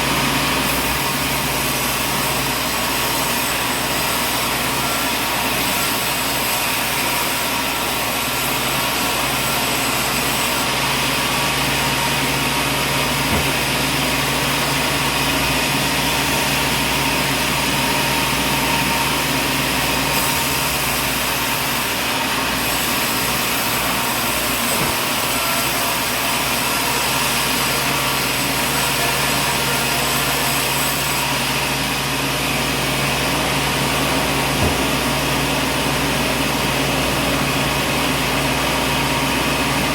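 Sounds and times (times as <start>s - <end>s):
machinery motor drone: 10.9s - 21.6s, 32.6s - 37.7s.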